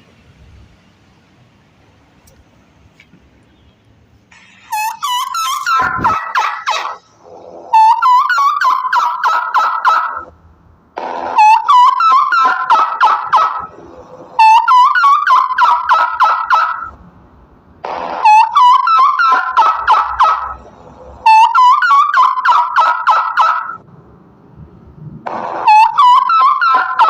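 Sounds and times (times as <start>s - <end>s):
turkey gobbling: 4.7s - 10.3s, 11.3s - 13.8s, 14.4s - 16.9s, 18.2s - 20.6s, 21.2s - 23.8s, 25.6s - 27.0s.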